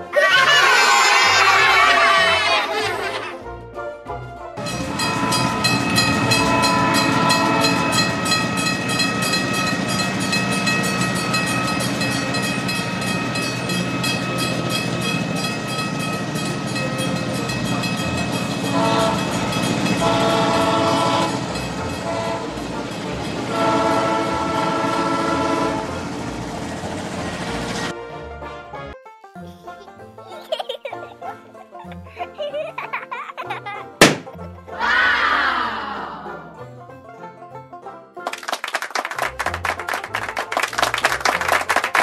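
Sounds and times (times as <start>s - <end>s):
train horn blasts: 4.6s - 26.2s.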